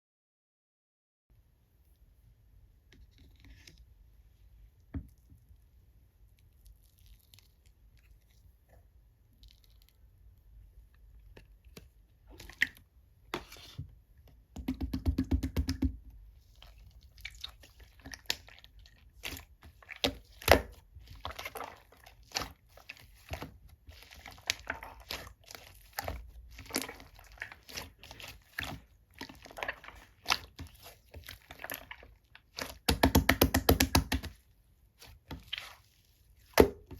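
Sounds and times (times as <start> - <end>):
slime squished by hand: 16.4 - 36.9.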